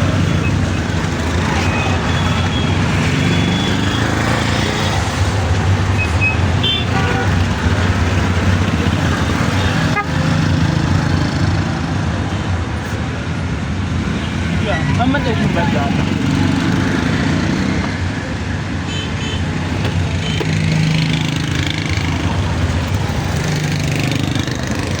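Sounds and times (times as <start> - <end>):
traffic noise: 0.0 - 25.0
vehicle engine humming: 0.0 - 25.0
car horn toots: 9.6 - 10.2.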